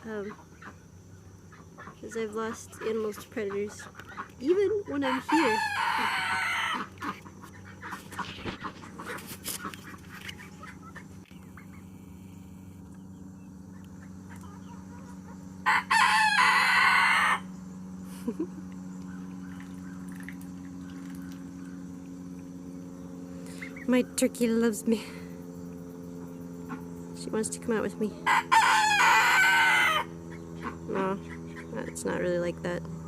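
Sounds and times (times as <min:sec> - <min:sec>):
hens clucking: 0:01.4 - 0:11.9
rooster crowing: 0:05.0 - 0:06.9, 0:15.6 - 0:17.6, 0:28.2 - 0:30.2.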